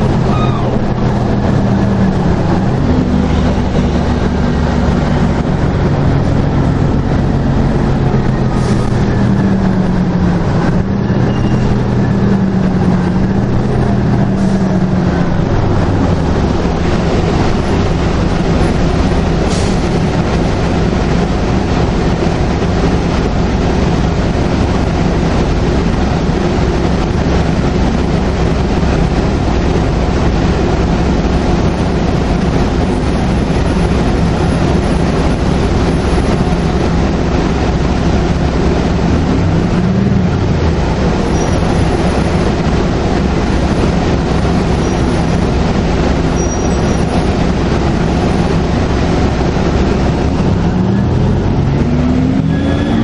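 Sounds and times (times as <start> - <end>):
diesel bus engine running: 0.0 - 53.0
road and body noise: 0.0 - 53.0
turbocharger whistle: 0.2 - 0.8, 52.4 - 53.0.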